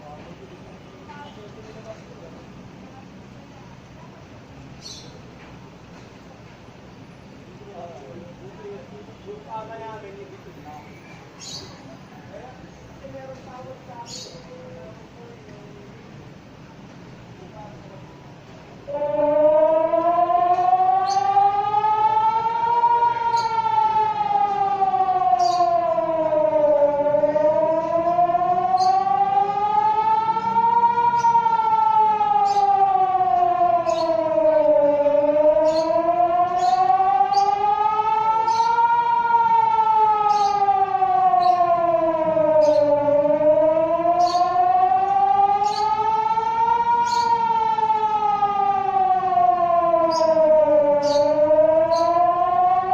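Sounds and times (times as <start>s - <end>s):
warning siren wailing: 18.7s - 52.9s.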